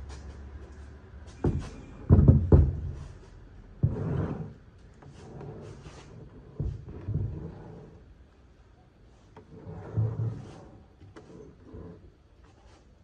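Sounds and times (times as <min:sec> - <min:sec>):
dull knocks and thuds: 0:01.4 - 0:03.0.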